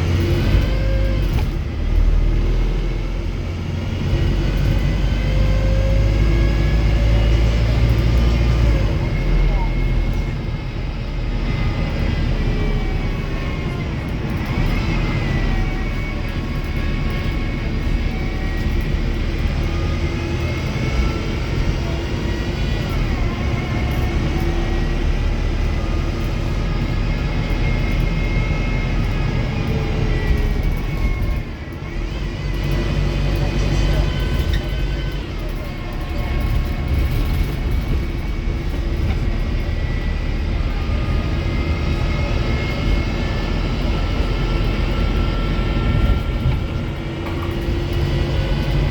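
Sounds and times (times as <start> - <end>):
bus diesel engine drone: 0.0 - 48.9
whining drivetrain tones: 0.0 - 48.9.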